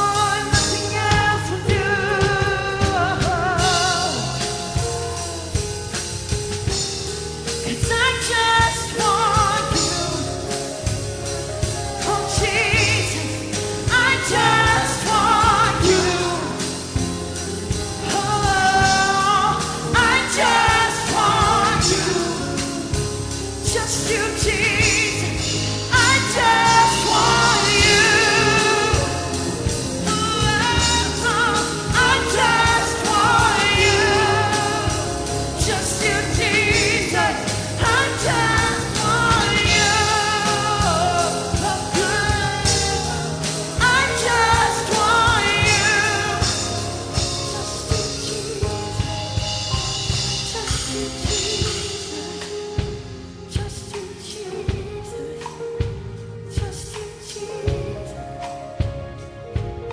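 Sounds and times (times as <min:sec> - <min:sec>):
band accompaniment: 0:00.0 - 0:59.9
people singing with vibrato: 0:07.9 - 0:52.8.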